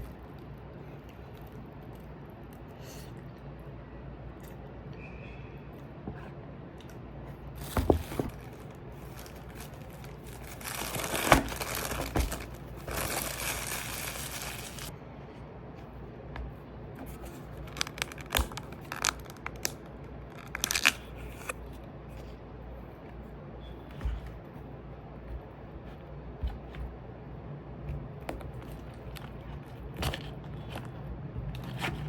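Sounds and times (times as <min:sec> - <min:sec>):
wrapping crinkling and tearing: 0:07.6 - 0:14.9, 0:17.2 - 0:21.6.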